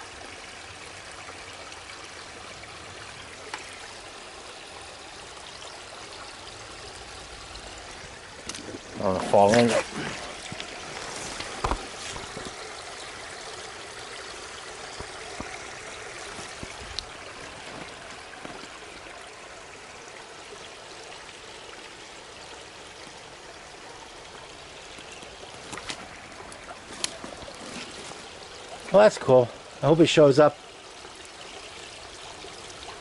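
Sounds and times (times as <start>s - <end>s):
stream water running: 0.0s - 33.0s.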